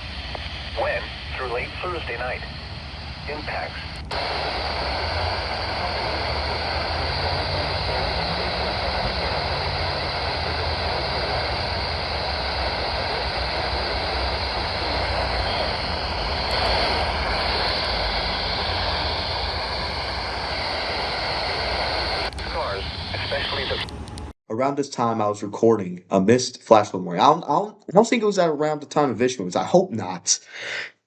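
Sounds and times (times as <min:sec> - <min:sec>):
radio static hiss: 0:00.0 - 0:24.3
faint voice on radio: 0:00.8 - 0:02.5, 0:03.1 - 0:23.9.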